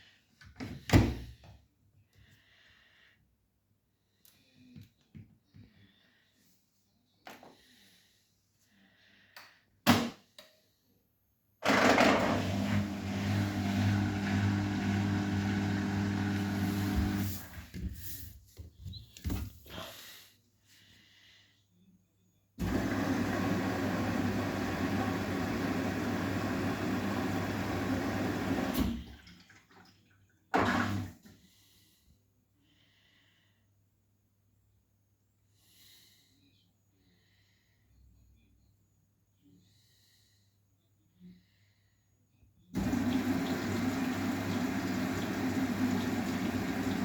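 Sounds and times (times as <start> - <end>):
washing machine rushing with hum: 11.6 - 17.7, 22.6 - 29.3, 30.6 - 31.2, 42.8 - 47.0.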